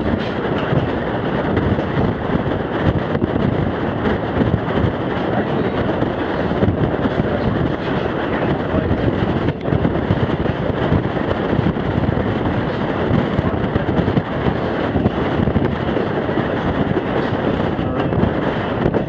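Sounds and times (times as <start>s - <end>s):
train rumbling and rattling: 0.0s - 19.0s
wind buffeting microphone: 0.0s - 19.0s.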